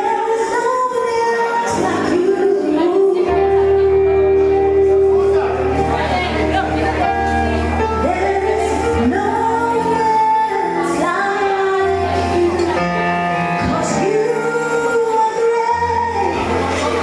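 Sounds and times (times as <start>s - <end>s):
band with steady bass line: 0.0s - 17.0s
woman singing sustained notes: 13.7s - 17.0s.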